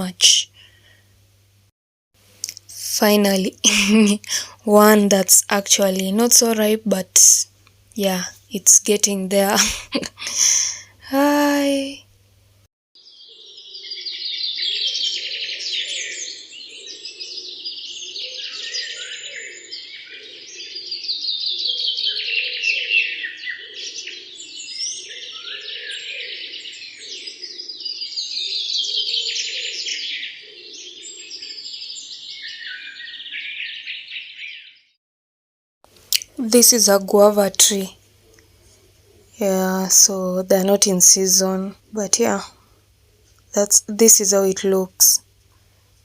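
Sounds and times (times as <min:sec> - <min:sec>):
birds chirping in chorus: 0:13.0 - 0:35.0.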